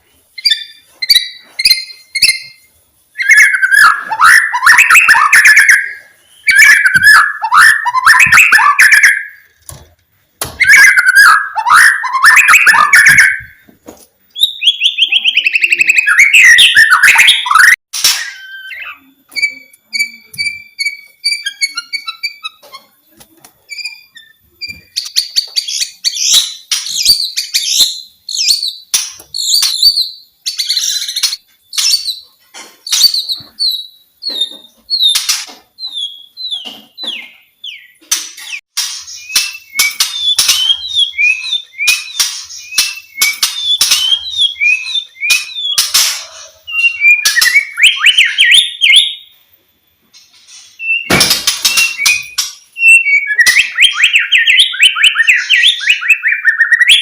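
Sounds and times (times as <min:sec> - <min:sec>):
bird singing whistled phrases: 0:03.2 - 0:09.4, 0:10.6 - 0:13.6, 0:14.4 - 0:22.6, 0:39.2 - 0:49.3, 0:50.8 - 0:51.1, 0:51.7 - 0:57.0.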